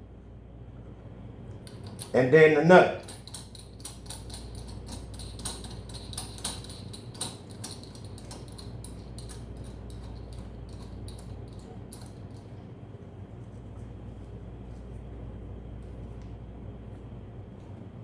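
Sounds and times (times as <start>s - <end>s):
light metal clicking: 1.5s - 2.2s, 3.0s - 12.5s.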